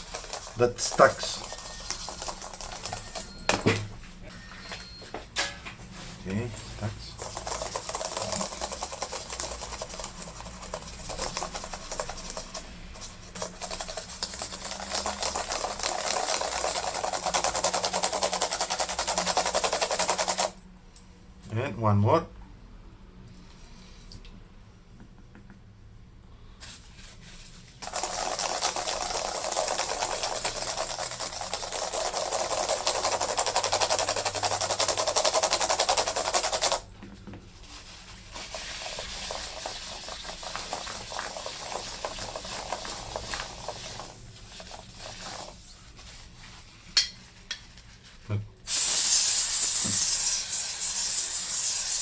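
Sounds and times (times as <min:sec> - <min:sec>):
compressed air hissing: 0:48.6 - 0:52.0.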